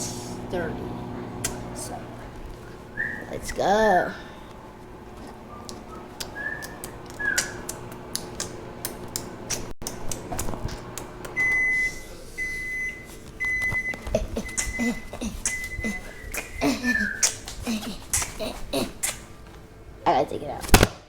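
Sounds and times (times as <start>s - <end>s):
microwave oven humming: 0.0s - 20.6s
microwave alarm beeps: 11.4s - 16.4s.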